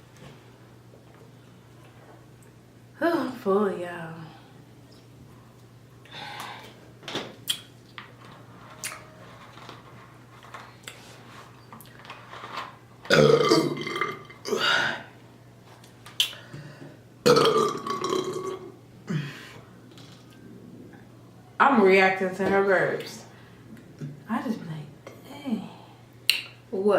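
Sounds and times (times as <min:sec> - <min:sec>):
person belching: 0:13.1 - 0:15.0, 0:17.2 - 0:19.3.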